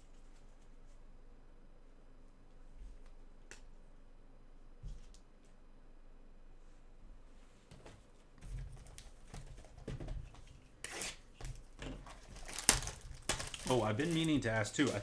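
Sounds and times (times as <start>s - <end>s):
cards and packaging rustling: 8.8s - 15.0s.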